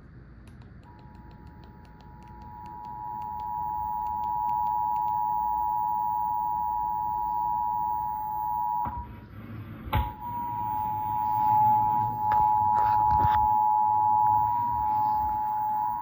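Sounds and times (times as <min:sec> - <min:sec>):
click: 0:00.4 - 0:05.2
two-tone alert signal: 0:10.2 - 0:16.0.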